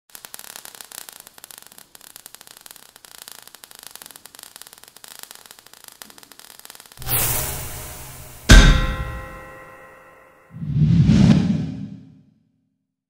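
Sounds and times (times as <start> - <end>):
crackling static hiss: 0.1 - 7.4.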